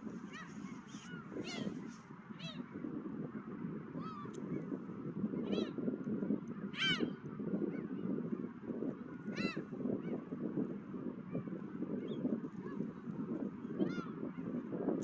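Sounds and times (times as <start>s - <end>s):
seagulls calling: 0.0s - 2.8s, 4.0s - 4.7s, 6.6s - 8.1s, 9.2s - 10.3s.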